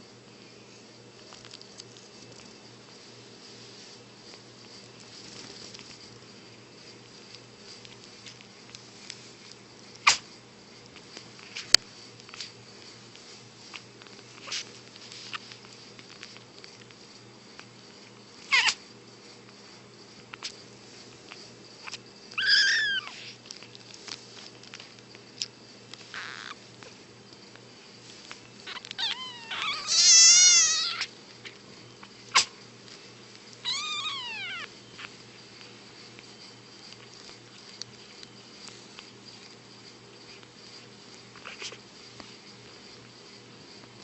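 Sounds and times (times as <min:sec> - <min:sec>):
kitten sneezes: 0:10.0 - 0:10.3, 0:18.5 - 0:18.8, 0:32.3 - 0:32.6
kittens meowing: 0:18.5 - 0:18.8, 0:22.4 - 0:23.4, 0:26.1 - 0:26.6, 0:28.6 - 0:31.1, 0:33.6 - 0:35.1.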